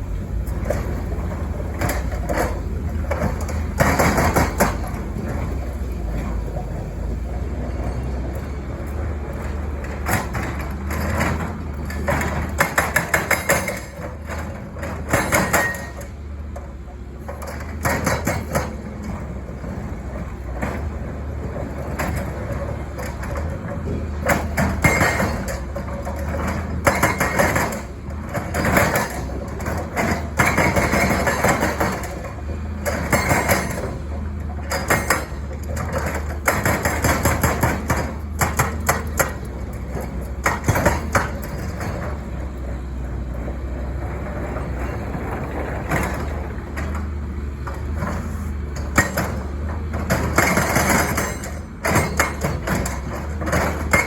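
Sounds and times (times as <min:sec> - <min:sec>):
diesel engine running: 0:00.0 - 0:54.0
hydraulic breaker hammering: 0:09.9 - 0:16.1, 0:22.1 - 0:42.4, 0:48.8 - 0:54.0.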